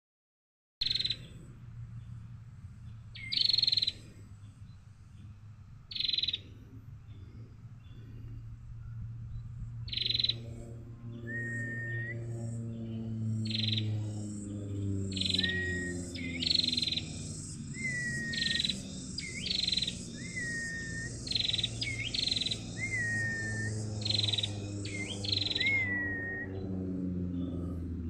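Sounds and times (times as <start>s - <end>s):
bird calling: 0.8s - 1.4s, 3.1s - 4.6s, 5.9s - 7.2s, 9.9s - 26.7s
low steady drone: 0.8s - 28.0s.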